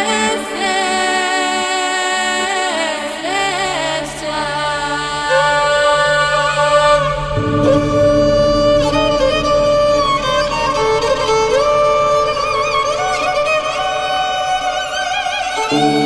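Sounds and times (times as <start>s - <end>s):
bowed violin-like melody: 5.0s - 16.0s
sustained drone: 6.9s - 14.7s.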